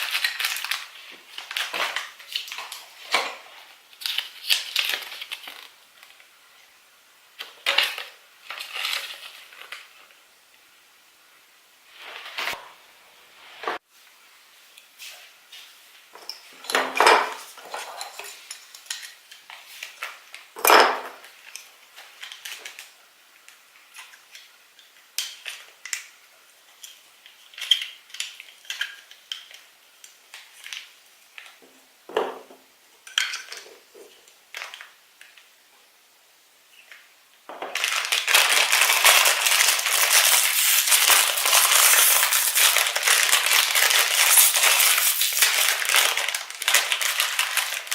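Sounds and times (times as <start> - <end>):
packaging rustling: 0.0 - 3.2, 4.0 - 5.8, 37.7 - 47.9
plastic toys clicking and clattering: 0.0 - 3.4, 16.6 - 22.9, 26.7 - 31.6, 33.0 - 35.4, 37.6 - 47.9.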